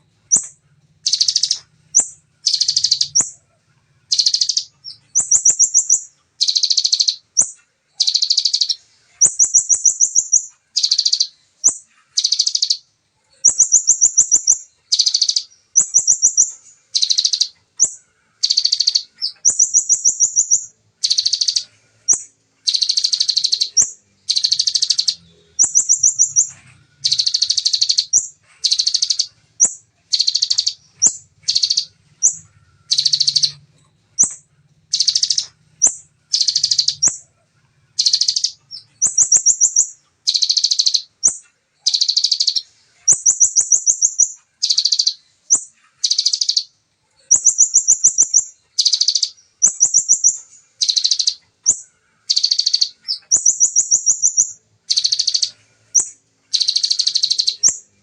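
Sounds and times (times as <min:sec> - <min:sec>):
bird singing high trills: 0:00.2 - 0:58.0.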